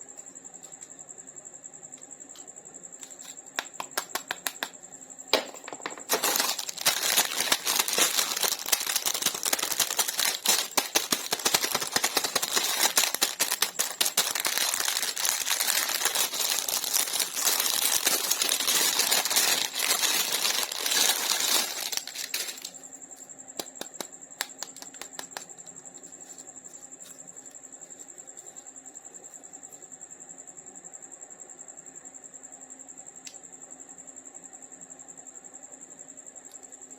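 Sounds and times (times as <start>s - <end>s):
packaging crinkling and clicking: 5.4s - 22.8s, 23.6s - 25.4s.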